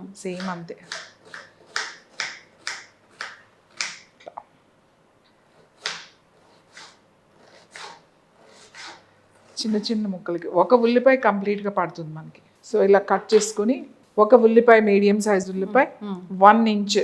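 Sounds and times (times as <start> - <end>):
knife cutting onion on board: 0.3 - 4.2, 5.5 - 10.0.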